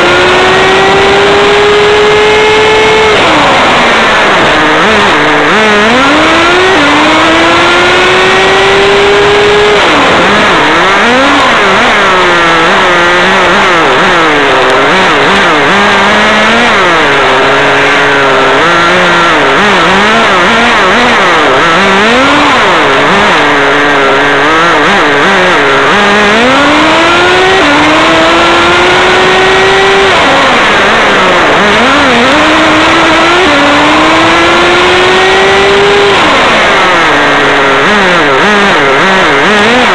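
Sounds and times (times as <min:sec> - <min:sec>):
toy car motor revving: 0:00.0 - 0:39.9.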